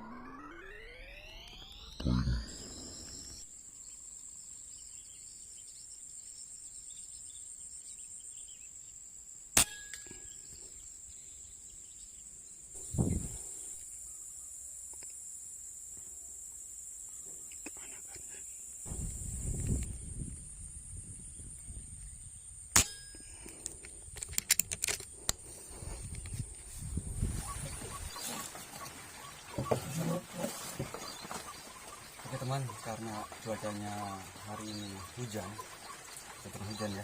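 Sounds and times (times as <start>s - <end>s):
insects shrilling: 25.1s - 37.0s.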